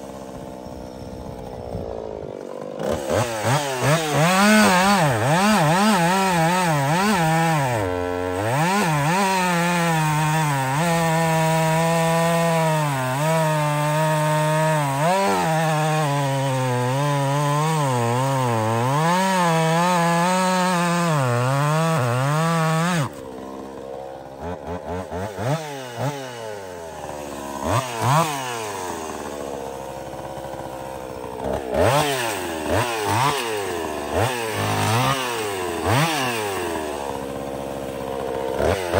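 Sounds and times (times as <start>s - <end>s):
chainsaw cutting wood: 0.0s - 38.9s
chainsaw throttle blips: 0.0s - 38.9s.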